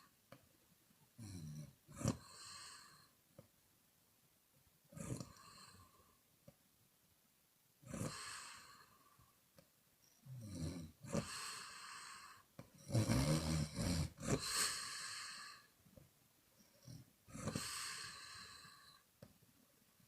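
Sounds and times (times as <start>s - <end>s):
woman snoring: 7.9s - 9.0s, 10.4s - 15.7s, 16.9s - 19.0s.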